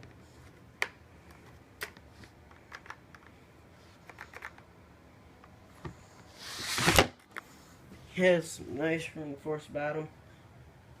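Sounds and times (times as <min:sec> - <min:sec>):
rubbing and shuffling of case: 0:01.2 - 0:04.7.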